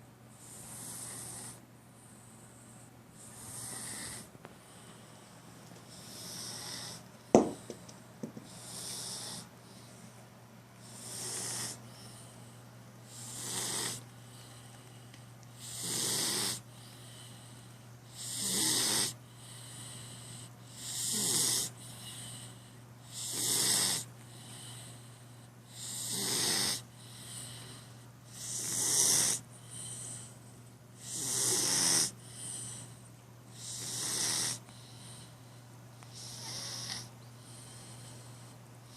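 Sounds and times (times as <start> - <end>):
cat snoring: 0.4 - 1.6, 3.2 - 4.8, 5.9 - 7.0, 8.5 - 9.5, 10.8 - 11.8, 13.1 - 14.0, 15.6 - 17.5, 18.1 - 25.0, 25.7 - 30.2, 31.0 - 32.9, 33.5 - 35.3, 36.1 - 38.4.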